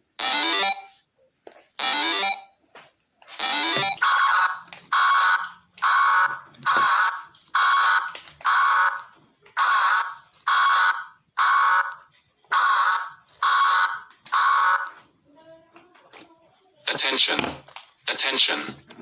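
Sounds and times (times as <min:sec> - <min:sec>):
harsh electronic alarm beep: 0:00.2 - 0:00.9, 0:01.8 - 0:02.5, 0:03.4 - 0:09.0.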